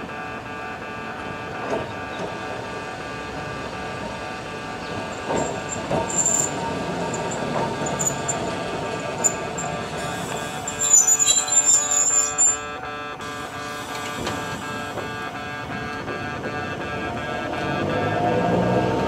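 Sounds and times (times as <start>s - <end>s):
electric train motor whine: 0.0s - 19.0s
high wheel squeals: 1.1s - 19.0s
wheels knocking over track: 1.6s - 12.6s.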